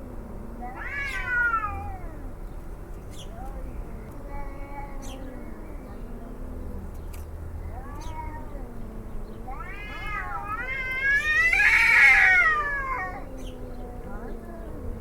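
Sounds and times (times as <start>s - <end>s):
cat howling: 0.6s - 2.2s, 7.7s - 14.9s.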